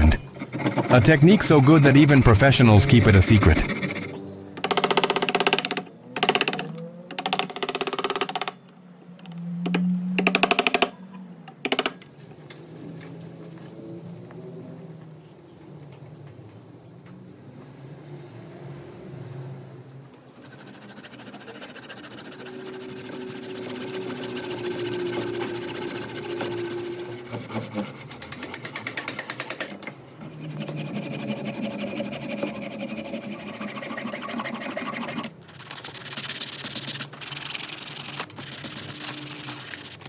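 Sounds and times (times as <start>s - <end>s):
sanding wood: 20.4s - 28.0s, 30.3s - 40.0s.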